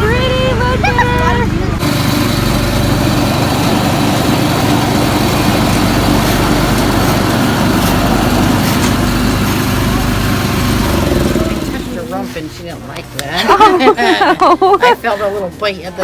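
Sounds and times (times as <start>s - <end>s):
engine idling: 0.0s - 12.3s.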